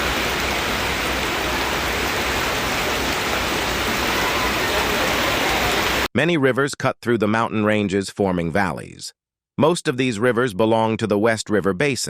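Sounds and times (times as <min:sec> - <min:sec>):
heavy rain pouring: 0:00.0 - 0:06.1.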